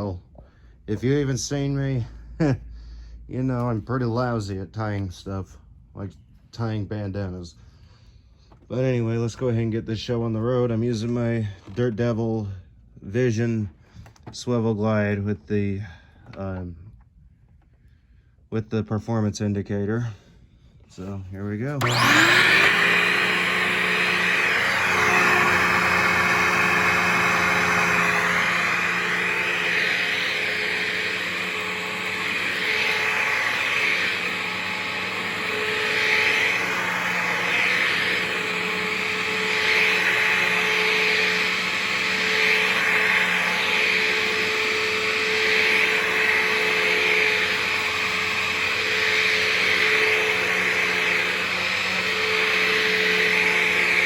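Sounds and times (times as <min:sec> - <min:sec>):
upright vacuum cleaner running: 0:21.7 - 0:54.0.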